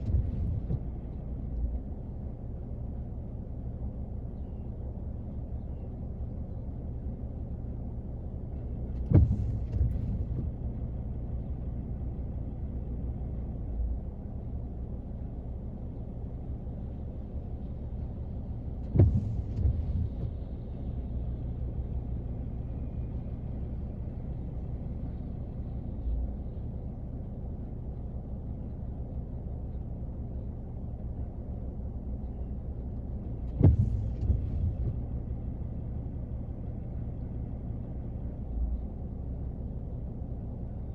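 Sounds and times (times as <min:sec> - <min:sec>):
low rumbling: 0:00.0 - 0:40.9
rain drumming on car roof: 0:09.0 - 0:10.6, 0:18.9 - 0:20.5, 0:33.5 - 0:35.1.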